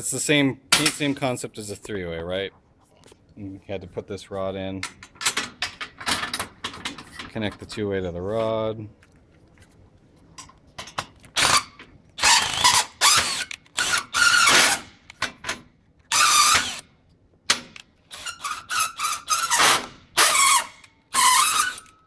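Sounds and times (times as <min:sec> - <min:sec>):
power drill bursts: 0:11.4 - 0:14.8, 0:16.1 - 0:16.8
metal parts squeaking: 0:16.1 - 0:16.8, 0:18.1 - 0:22.0.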